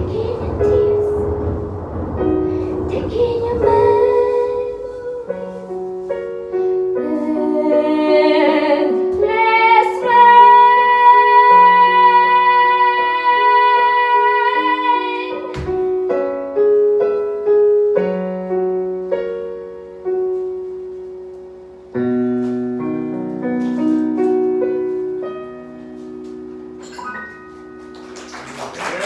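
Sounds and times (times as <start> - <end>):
slow piano notes and chords: 0.0 - 29.0.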